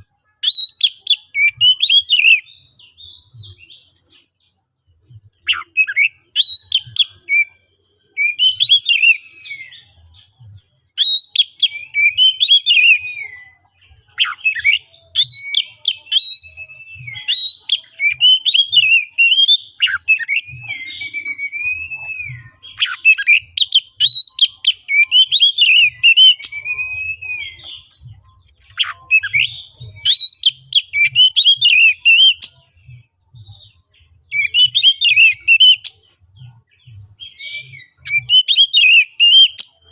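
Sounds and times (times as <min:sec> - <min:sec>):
songbird whistling and chattering: 0:00.0 - 0:04.4, 0:05.2 - 0:39.9.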